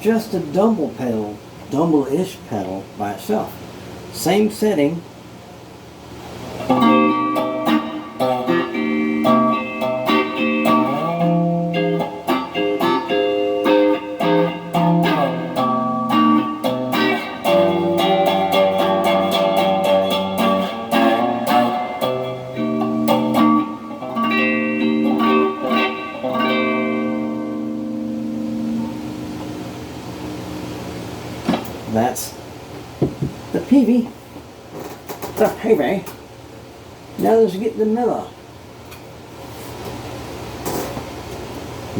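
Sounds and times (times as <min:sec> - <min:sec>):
overdriven electric guitar: 0:06.4 - 0:30.8.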